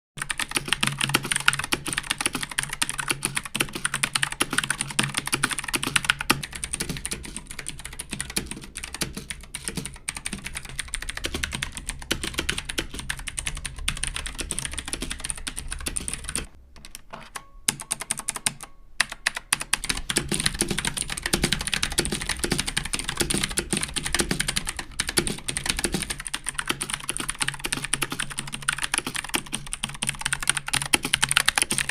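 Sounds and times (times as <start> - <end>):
computer keyboard typing: 0.2 - 31.9.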